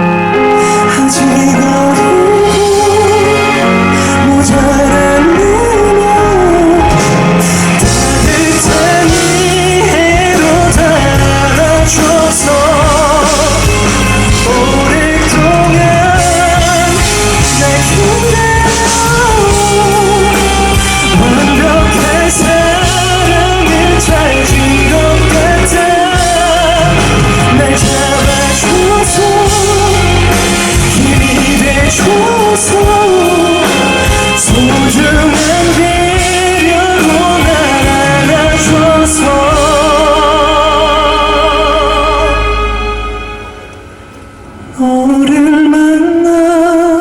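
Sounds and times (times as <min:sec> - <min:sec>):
man singing with vibrato: 0:00.0 - 0:44.0, 0:44.6 - 0:47.0
full band playing: 0:00.0 - 0:47.0.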